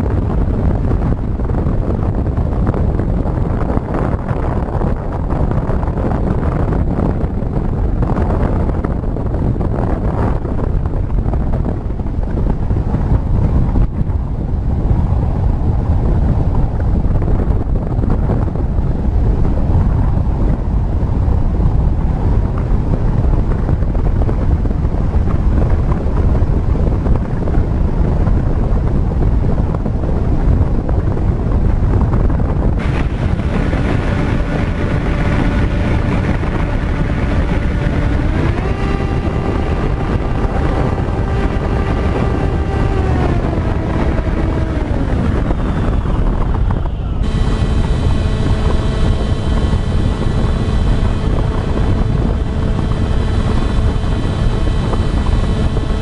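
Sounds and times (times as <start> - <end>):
wind buffeting microphone: 0.0 - 56.0
electric motor whine: 32.8 - 56.0.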